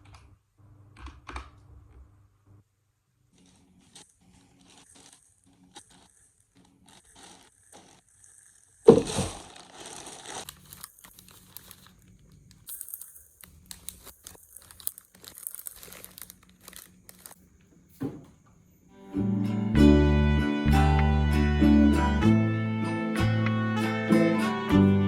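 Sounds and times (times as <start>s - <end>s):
crinkling and rustling: 3.2s - 18.6s
thump: 18.0s - 18.4s
plucked acoustic guitar music: 19.1s - 25.0s.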